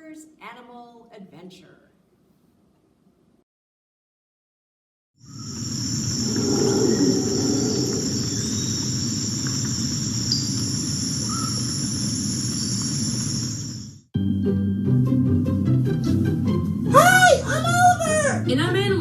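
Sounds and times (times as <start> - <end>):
insect chorus: 5.2 - 14.0.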